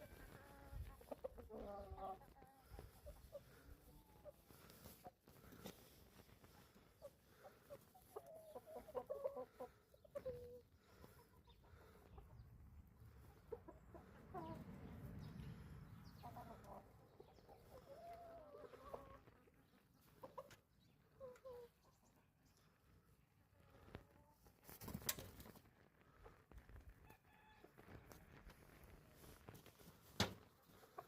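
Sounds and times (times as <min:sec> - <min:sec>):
chickens clucking: 0:00.0 - 0:22.6, 0:29.6 - 0:31.0.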